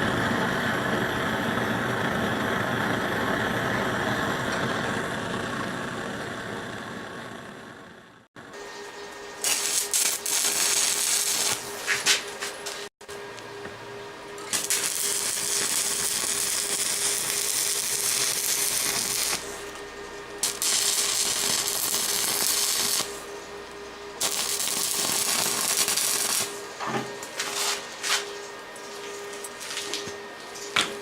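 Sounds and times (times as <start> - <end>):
welding arc crackling and hissing: 9.4 - 12.9, 14.4 - 19.8, 20.4 - 23.2, 24.2 - 28.3.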